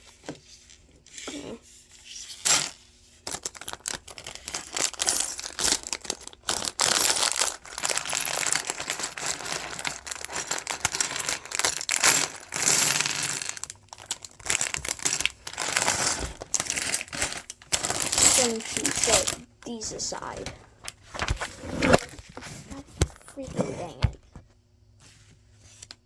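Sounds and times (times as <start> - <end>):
plastic pieces clinking: 2.4 - 19.8
plastic bags crinkling: 3.3 - 22.2.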